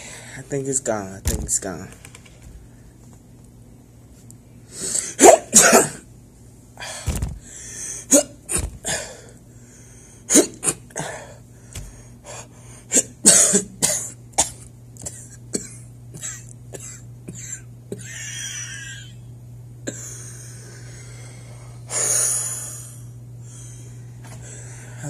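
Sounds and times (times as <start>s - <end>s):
person coughing: 5.1s - 6.1s, 8.1s - 9.2s, 10.3s - 11.3s, 12.9s - 19.2s, 19.8s - 20.2s.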